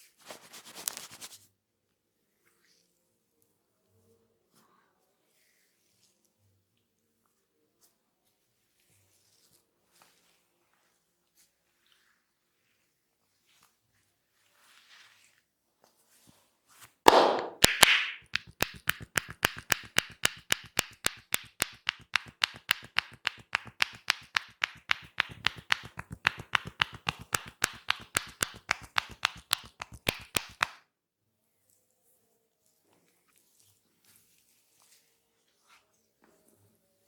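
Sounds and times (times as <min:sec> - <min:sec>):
rapid massage tapping: 0:17.1 - 0:30.8.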